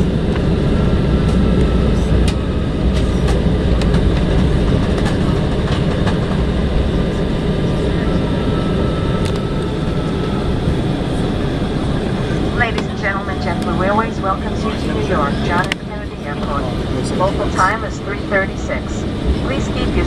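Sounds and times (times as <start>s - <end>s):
aircraft cabin rumble: 0.0s - 20.0s
faint steady whine: 7.2s - 20.0s.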